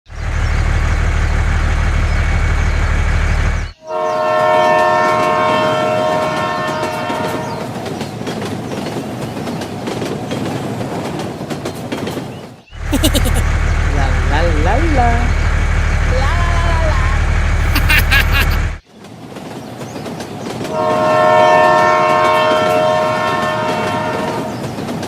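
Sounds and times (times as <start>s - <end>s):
low train rumble: 0.1s - 12.6s, 18.6s - 25.0s
train horn chord: 3.8s - 7.6s, 20.7s - 24.6s
rattling train wheels: 6.8s - 12.6s, 18.9s - 20.9s, 23.8s - 25.0s.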